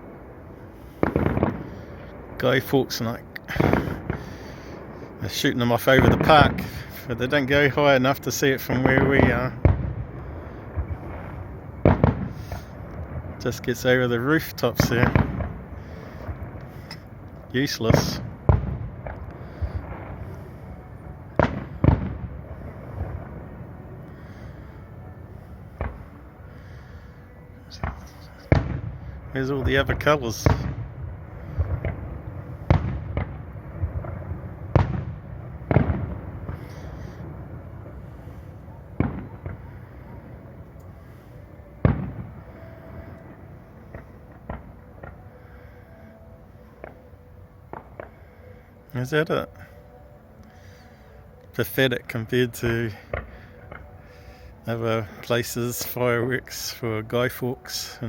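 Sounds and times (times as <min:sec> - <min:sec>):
firework bangs: 0:00.0 - 0:40.3, 0:41.0 - 0:45.5, 0:52.3 - 0:58.0
small firework pops: 0:11.8 - 0:13.2.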